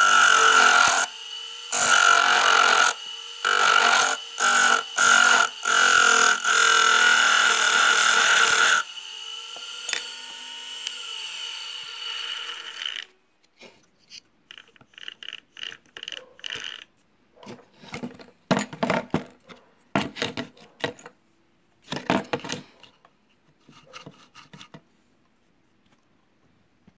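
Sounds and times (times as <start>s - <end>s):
lathe motor whining: 0.0s - 13.0s
scrapes and knocks: 17.4s - 21.2s, 21.8s - 24.9s.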